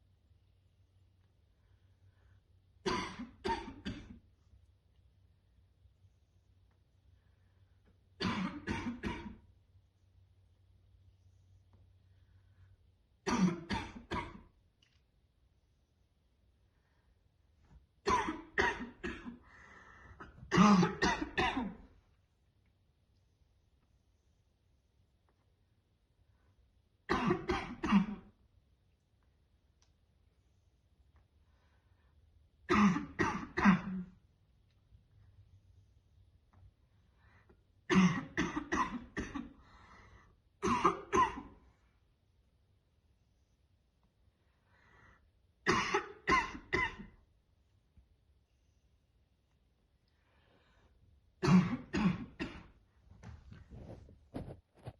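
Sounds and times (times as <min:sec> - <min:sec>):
woman coughing harshly: 0:02.8 - 0:04.2, 0:08.2 - 0:09.4, 0:13.3 - 0:14.5, 0:18.1 - 0:19.4, 0:20.2 - 0:21.9, 0:27.1 - 0:28.3, 0:32.7 - 0:34.2, 0:37.9 - 0:39.6, 0:40.6 - 0:41.6, 0:45.7 - 0:47.2, 0:51.4 - 0:52.7.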